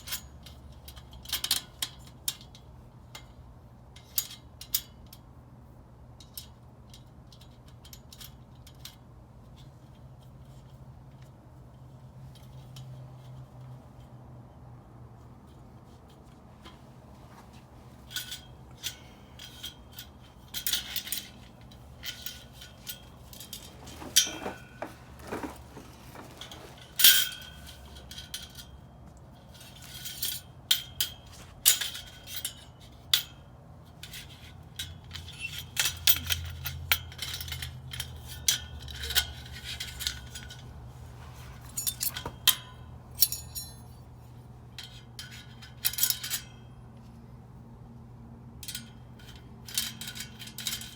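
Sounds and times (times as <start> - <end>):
metal rack parts clicking: 18.1 - 28.7, 41.6 - 43.9.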